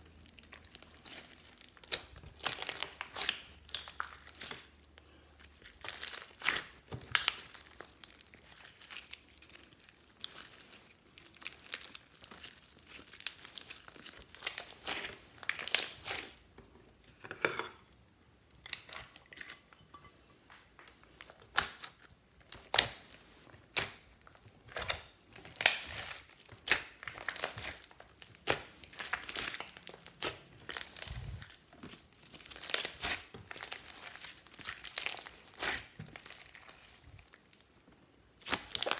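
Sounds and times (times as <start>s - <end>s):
slime crackling and popping: 0.1s - 4.9s, 5.5s - 16.4s, 20.8s - 37.8s, 38.4s - 38.9s.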